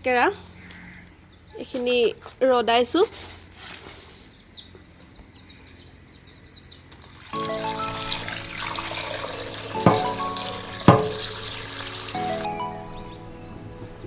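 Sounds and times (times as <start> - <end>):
background music with held notes: 7.4 - 14.0.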